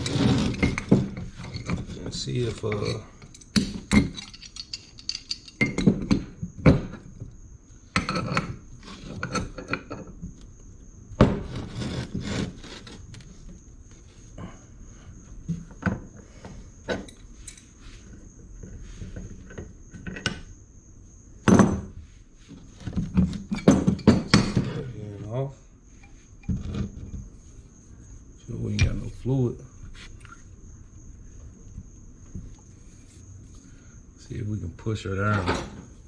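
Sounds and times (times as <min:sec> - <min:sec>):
metal scraping and rubbing: 0:00.0 - 0:03.2, 0:11.4 - 0:13.2
metal clanking on metal: 0:00.0 - 0:06.2, 0:35.3 - 0:35.9.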